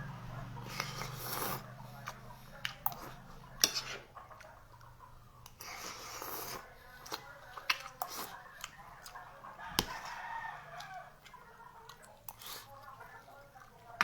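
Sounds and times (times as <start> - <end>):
rooster crowing: 9.6 - 11.2.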